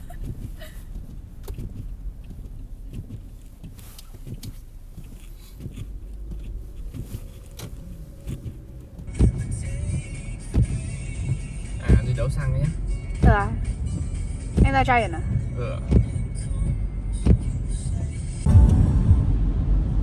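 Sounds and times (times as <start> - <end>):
light clicks and knocks: 0.0 - 9.1
car engine and road rumble: 0.0 - 20.0
loud thumps: 18.5 - 20.0.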